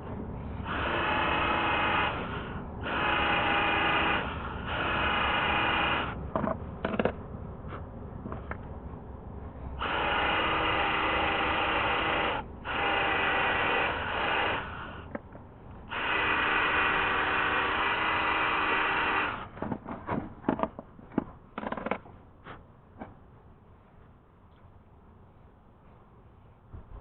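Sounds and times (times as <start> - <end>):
small electric power tool running: 0.6 - 6.2, 9.8 - 15.0, 15.9 - 19.5.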